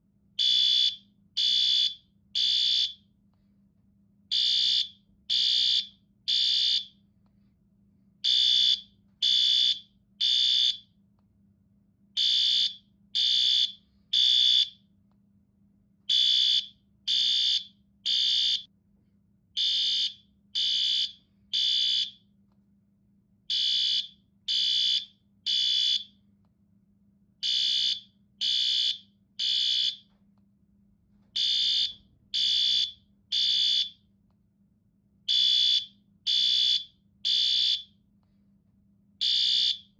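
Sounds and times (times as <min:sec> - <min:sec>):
fire alarm beeping: 0:00.4 - 0:03.0, 0:04.3 - 0:07.0, 0:08.2 - 0:10.9, 0:12.2 - 0:14.8, 0:16.1 - 0:18.7, 0:19.6 - 0:22.2, 0:23.5 - 0:26.2, 0:27.4 - 0:30.1, 0:31.4 - 0:34.0, 0:35.3 - 0:38.0, 0:39.2 - 0:39.9.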